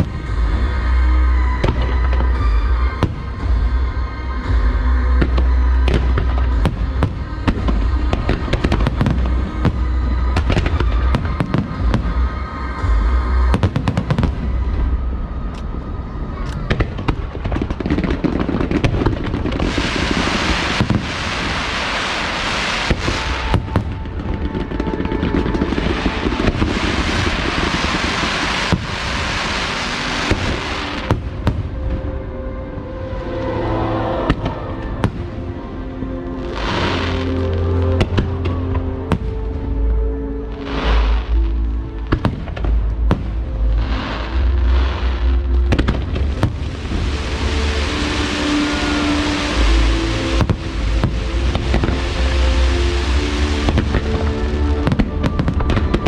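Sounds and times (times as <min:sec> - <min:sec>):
fireworks bangs and booms: 0:00.0 - 0:32.1, 0:42.0 - 0:56.0
crackling fireworks: 0:00.0 - 0:56.0
music: 0:00.0 - 0:56.0.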